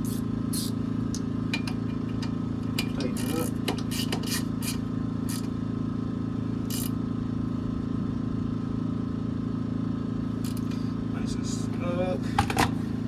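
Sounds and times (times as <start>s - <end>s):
steady mechanical hum: 0.0s - 13.0s
hand tools scraping and clinking: 1.5s - 5.5s.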